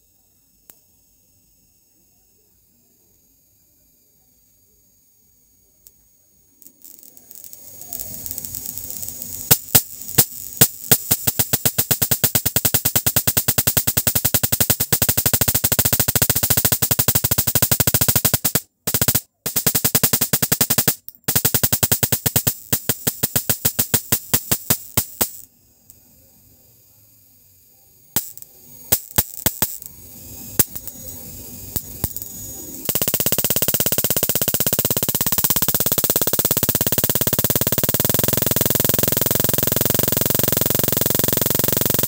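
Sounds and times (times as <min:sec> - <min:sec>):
high-voltage sparks snapping: 0:06.6 - 0:26.0, 0:28.1 - 0:42.0.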